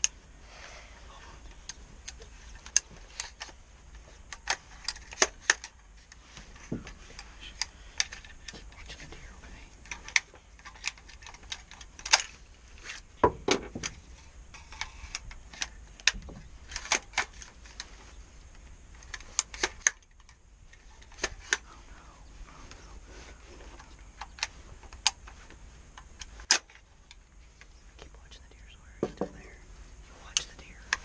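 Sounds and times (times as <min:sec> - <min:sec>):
equipment clicking and rustling: 0:01.4 - 0:08.8, 0:09.8 - 0:21.7.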